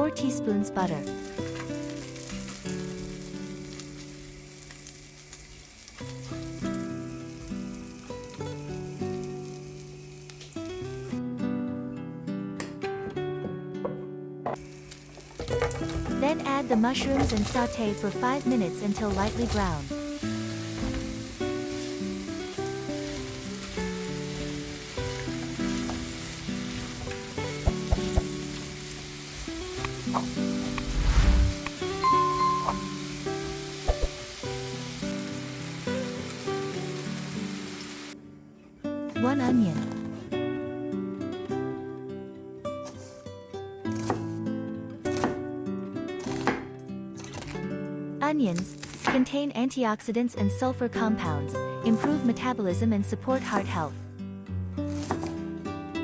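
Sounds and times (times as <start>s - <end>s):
soft plucked guitar music: 0.0s - 48.3s, 50.4s - 56.0s
butter sizzling in a frying pan: 1.2s - 11.0s, 14.6s - 15.8s, 17.5s - 30.8s, 31.7s - 38.2s.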